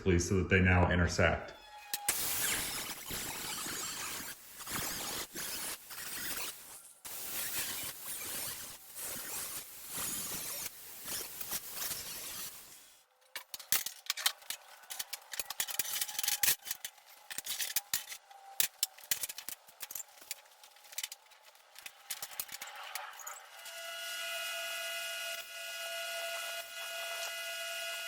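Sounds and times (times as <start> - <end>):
angle grinder whine: 23.0 - 28.0.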